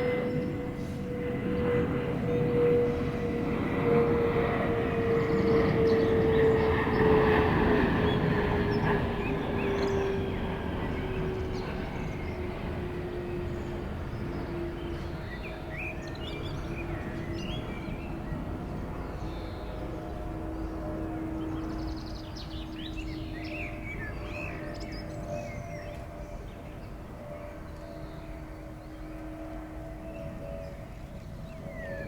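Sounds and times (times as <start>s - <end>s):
jet airliner passing overhead: 0.0s - 32.0s.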